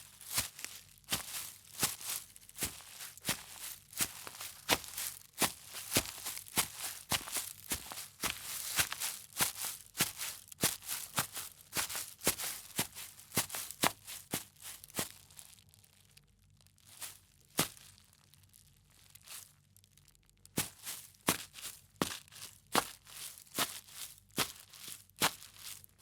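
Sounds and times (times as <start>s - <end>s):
footsteps on grass: 0.0s - 15.1s, 20.6s - 25.8s.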